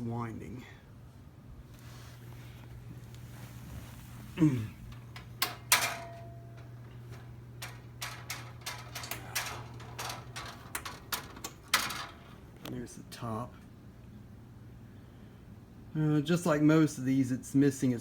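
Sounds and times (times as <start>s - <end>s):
steady low hum: 0.0s - 16.3s
fan handled clicks and knocks: 4.9s - 12.8s.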